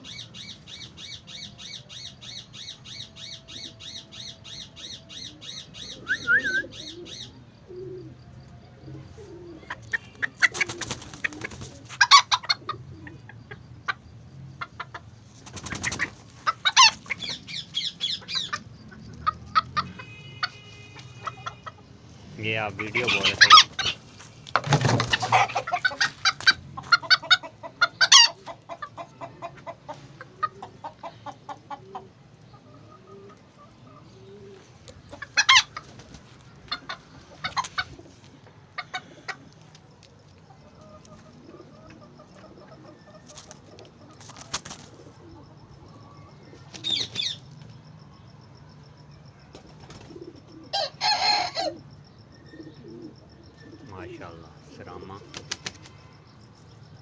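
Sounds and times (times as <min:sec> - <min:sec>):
chickens clucking: 0:00.0 - 0:48.5, 0:49.5 - 0:57.0
chicken squawks: 0:09.0 - 0:14.0, 0:14.6 - 0:21.9, 0:22.6 - 0:24.1, 0:24.7 - 0:39.6, 0:50.6 - 0:51.8.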